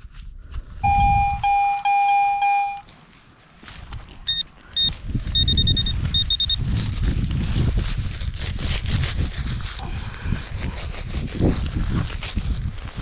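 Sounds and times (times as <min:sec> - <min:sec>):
high-pitched pinpointer beeps: 0:00.8 - 0:02.9, 0:04.3 - 0:06.6
metal detector target tone: 0:00.8 - 0:02.9, 0:04.3 - 0:06.6
rustling and scraping: 0:01.5 - 0:13.0.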